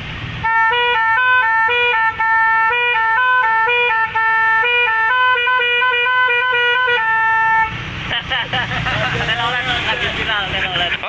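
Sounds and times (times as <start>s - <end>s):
multi-tone melody horn: 0.4s - 7.8s.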